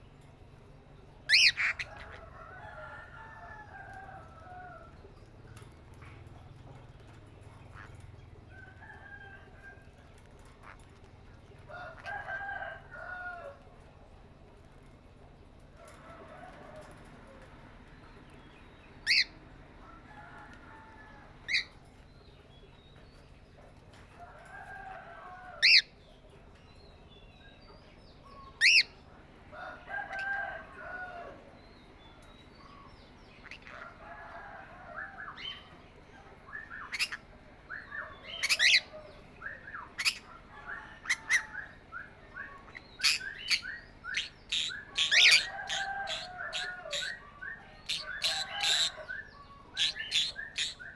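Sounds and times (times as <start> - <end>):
parrots chattering: 1.2 - 2.3, 19.0 - 19.3, 25.6 - 25.9, 28.6 - 29.0, 33.4 - 34.0, 36.8 - 37.2, 38.2 - 38.9, 39.9 - 41.7, 42.6 - 47.2, 47.8 - 50.9
parrots shrieking: 1.3 - 2.2, 19.0 - 19.3, 25.6 - 25.8, 28.6 - 28.8, 43.0 - 43.6, 44.2 - 47.2, 47.8 - 49.0.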